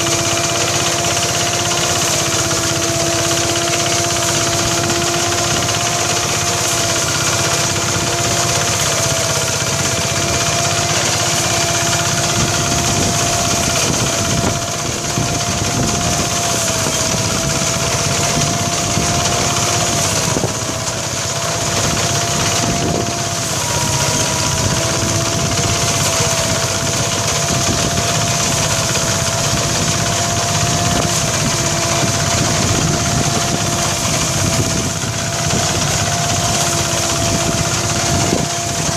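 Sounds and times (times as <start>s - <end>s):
rice thresher engine droning: 0.0s - 38.9s.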